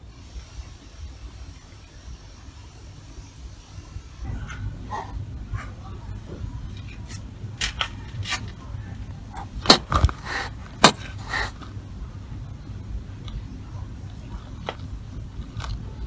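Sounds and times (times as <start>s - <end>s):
kitten hissing and spitting: 9.4s - 11.8s.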